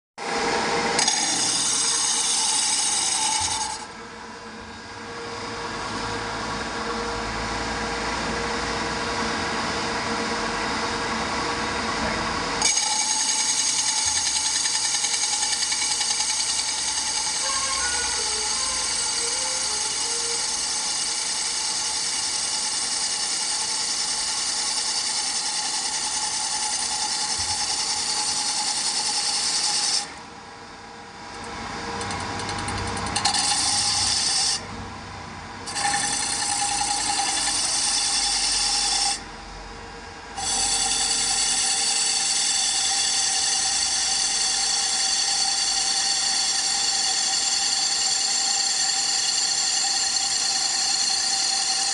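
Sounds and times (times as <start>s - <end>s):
machine whine and hiss: 0.2s - 51.9s
low machine rumble: 17.0s - 20.9s.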